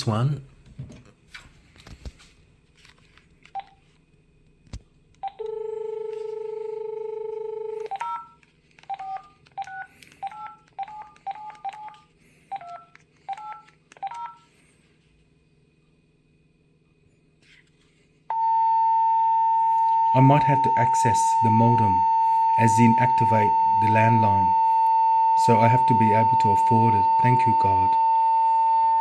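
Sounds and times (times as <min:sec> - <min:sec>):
telephone dial tone: 0:05.2 - 0:14.5, 0:18.3 - 0:29.0.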